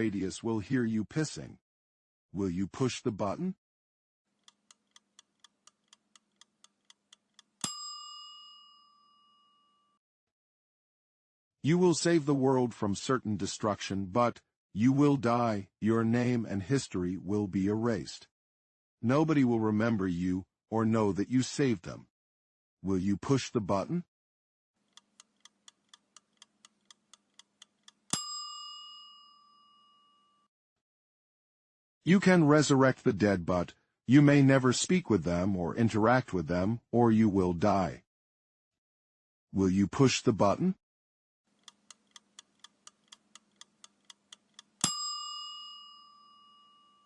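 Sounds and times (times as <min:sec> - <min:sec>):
timer ticking: 0:04.4 - 0:07.8, 0:24.9 - 0:28.3, 0:41.6 - 0:45.0
bright bell ding: 0:07.6 - 0:09.9, 0:28.1 - 0:30.4, 0:44.8 - 0:47.0.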